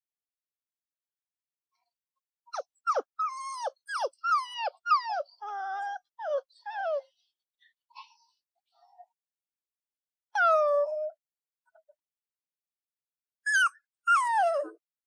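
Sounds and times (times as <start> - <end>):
puppy whimpering: 2.6 - 7.0, 10.4 - 11.2, 13.5 - 14.8.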